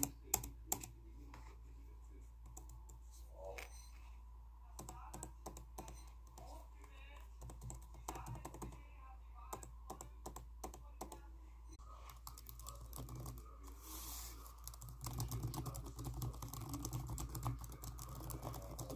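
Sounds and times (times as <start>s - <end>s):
computer keyboard typing: 0.0s - 0.9s, 4.8s - 6.5s, 7.4s - 8.8s, 9.5s - 11.2s, 12.1s - 13.5s, 14.5s - 18.9s
steady low hum: 0.0s - 18.9s.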